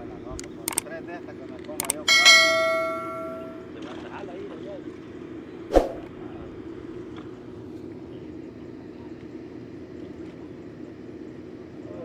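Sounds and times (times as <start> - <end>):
sharp knock: 1.8 - 3.6.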